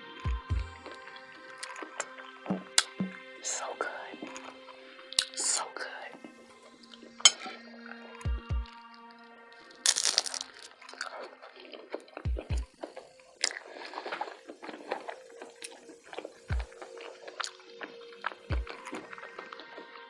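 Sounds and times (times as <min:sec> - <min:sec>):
chewing with wet clicks: 0:00.6 - 0:03.2, 0:03.8 - 0:05.4, 0:09.9 - 0:20.0
crunchy bite: 0:09.8 - 0:12.2.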